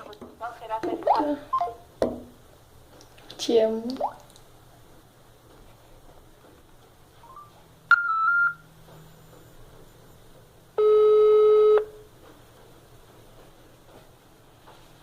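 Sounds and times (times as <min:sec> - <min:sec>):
electronic beep: 0:07.3 - 0:08.7
phone ringback tone: 0:07.9 - 0:08.6, 0:10.8 - 0:11.9.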